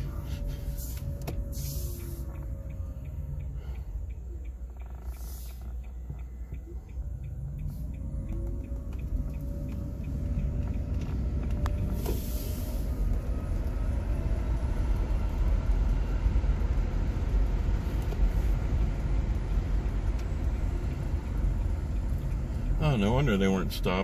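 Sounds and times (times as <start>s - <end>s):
car road and tyre rumble: 0.0s - 24.0s
brief hiss: 0.4s - 2.2s, 12.0s - 12.9s.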